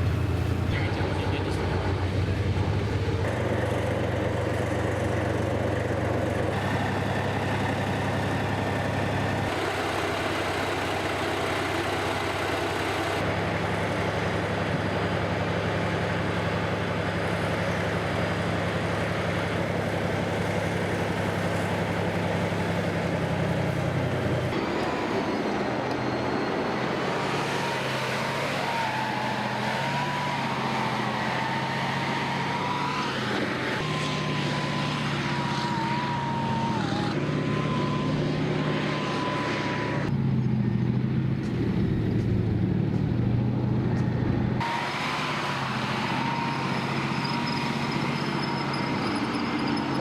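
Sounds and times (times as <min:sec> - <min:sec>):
heavy vehicle engines running: 0:00.0 - 0:50.0.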